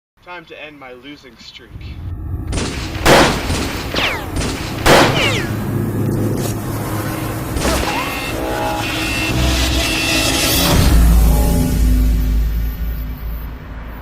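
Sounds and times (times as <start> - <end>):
steady held tones: 1.4 - 13.9
constant rumbling: 1.4 - 14.0
loud boom hits: 1.7 - 6.3
electronic intro music: 1.7 - 14.0.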